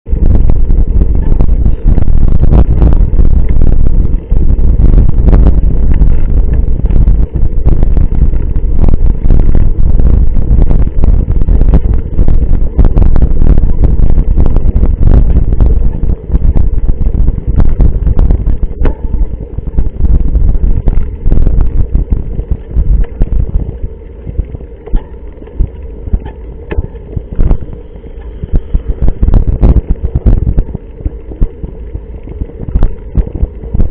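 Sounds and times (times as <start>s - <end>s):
wind buffeting microphone: 0.0s - 33.9s
bike knocks and rattles: 18.7s - 19.3s, 24.8s - 25.6s, 26.2s - 28.8s.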